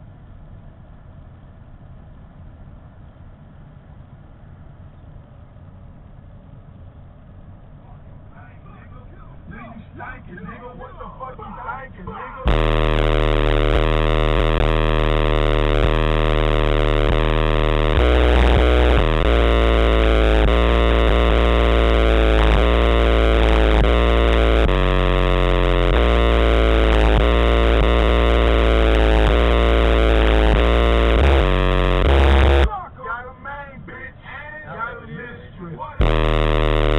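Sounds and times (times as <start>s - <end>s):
distorted bass-heavy music: 9.6s - 33.0s, 35.2s - 36.9s.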